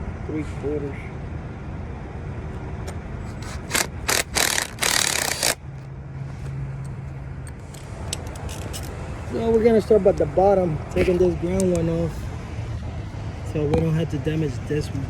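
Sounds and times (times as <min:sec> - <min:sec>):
harsh tool bursts on metal: 0:03.3 - 0:05.6.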